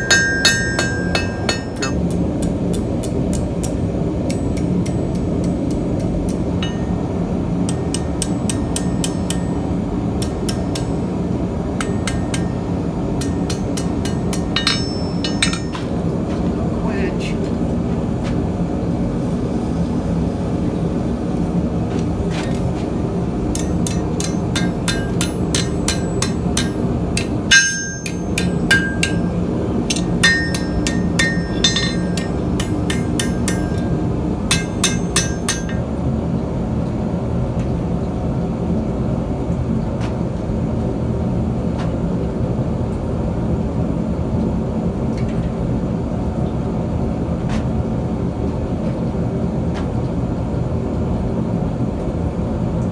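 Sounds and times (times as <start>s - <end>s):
hammer striking steel on anvil: 0.0s - 16.1s, 23.5s - 36.0s.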